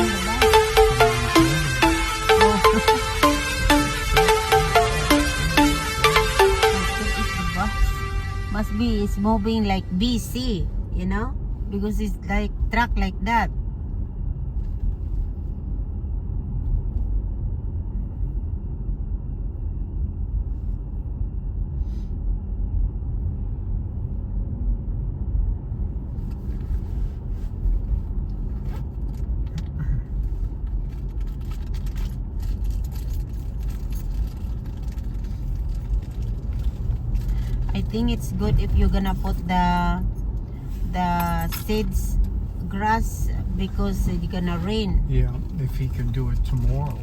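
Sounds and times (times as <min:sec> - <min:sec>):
car driving rumble: 0:25.7 - 0:47.0.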